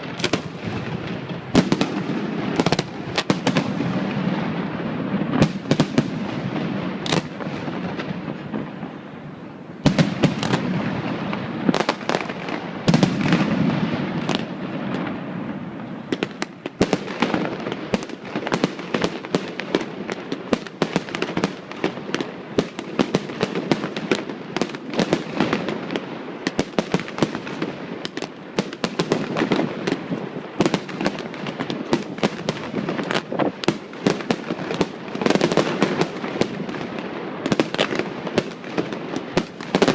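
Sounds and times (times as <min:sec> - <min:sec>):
rapid firework bangs and crackle: 0:00.0 - 0:39.9.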